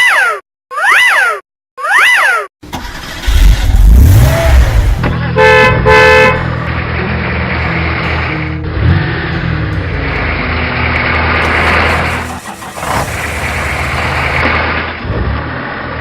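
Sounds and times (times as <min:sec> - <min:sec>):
vehicle engine starting and revving: 0:02.6 - 0:16.0
horn toots: 0:02.8 - 0:06.6.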